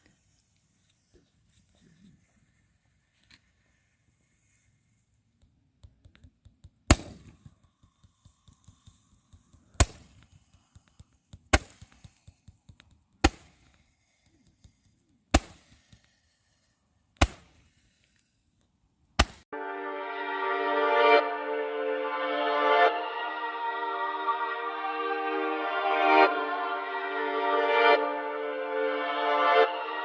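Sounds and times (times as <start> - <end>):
small crackles and pops: 5.4 - 19.4.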